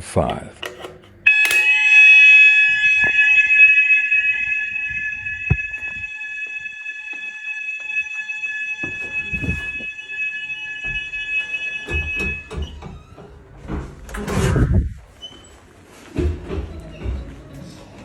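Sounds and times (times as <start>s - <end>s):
fire alarm high tone: 0.6s - 13.2s.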